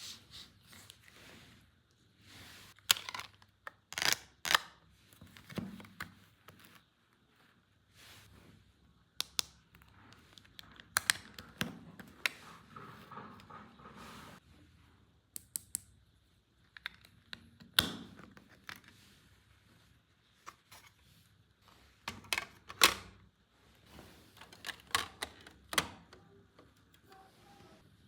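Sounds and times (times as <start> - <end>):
plastic toy parts clicking: 24.5 - 26.9.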